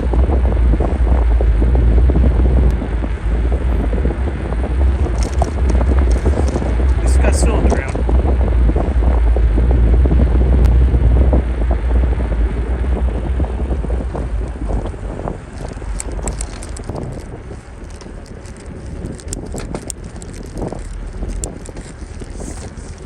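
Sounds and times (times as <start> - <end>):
wind buffeting microphone: 0.0 - 23.0
bicycle clicks and rattles: 5.0 - 8.1, 14.1 - 23.0.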